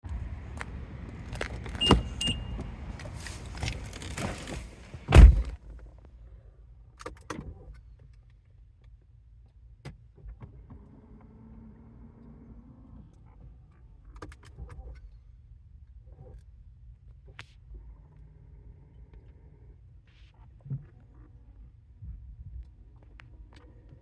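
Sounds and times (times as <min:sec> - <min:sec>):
car door shutting thump: 0:01.7 - 0:05.6
short high beeps: 0:01.8 - 0:02.6.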